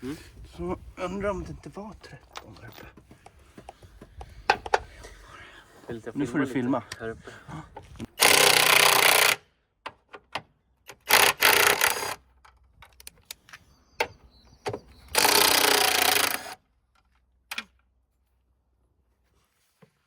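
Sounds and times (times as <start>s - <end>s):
power impact wrench running: 8.2s - 9.4s, 11.0s - 12.2s, 15.1s - 16.6s.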